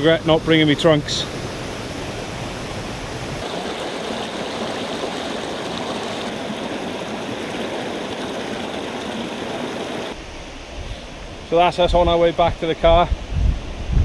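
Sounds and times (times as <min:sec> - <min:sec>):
river water rushing: 0:00.5 - 0:10.4.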